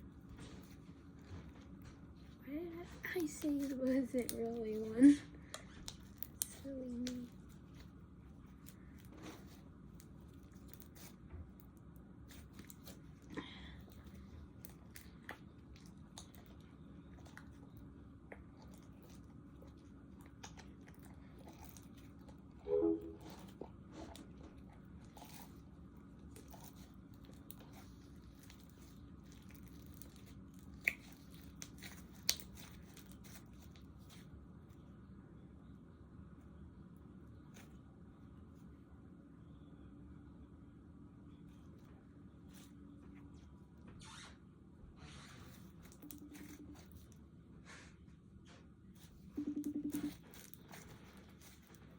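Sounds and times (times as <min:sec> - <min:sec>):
low hum: 0:00.0 - 0:33.1, 0:34.0 - 0:51.9
slime clicks and crackles: 0:05.5 - 0:07.9, 0:26.2 - 0:34.2.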